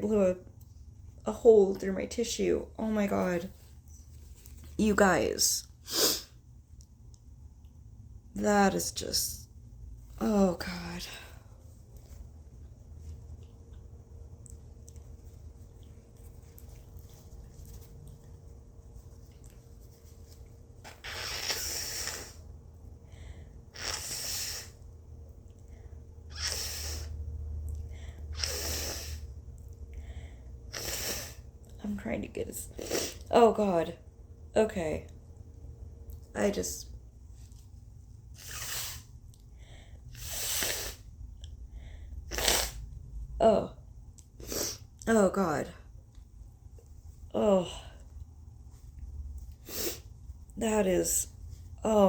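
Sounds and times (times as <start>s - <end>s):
low steady hum: 0.0s - 52.0s
congested nose blowing: 5.9s - 6.3s, 20.8s - 22.5s, 23.7s - 24.9s, 26.3s - 27.2s, 28.3s - 29.4s, 30.7s - 31.5s, 38.3s - 39.2s, 40.1s - 41.1s, 42.2s - 42.9s.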